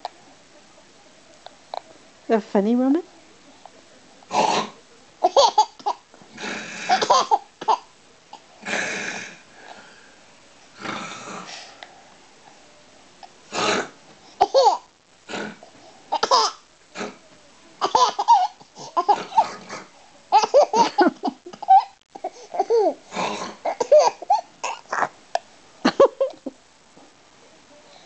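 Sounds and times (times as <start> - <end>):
pretend snoring: 4.3 - 4.8, 6.4 - 7.1, 8.6 - 10.1, 10.8 - 11.8, 13.5 - 14.0, 15.3 - 15.6, 17.0 - 17.2, 23.1 - 23.8
baby laughing: 5.2 - 6.0, 14.4 - 14.9, 17.8 - 19.4, 20.3 - 21.9, 22.6 - 23.0, 23.7 - 24.9.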